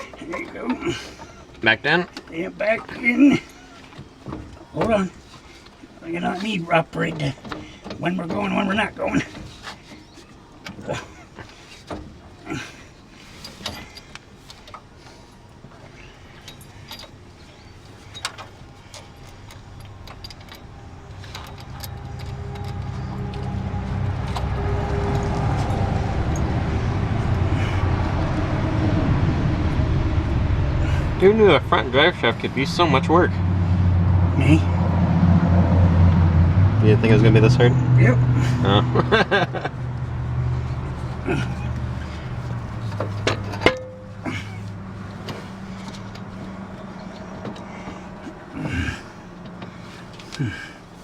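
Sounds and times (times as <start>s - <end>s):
low mechanical rumble: 12.1s - 51.0s
metallic clinks and knocks: 16.3s - 26.6s, 42.7s - 48.4s
low hum: 18.1s - 49.9s.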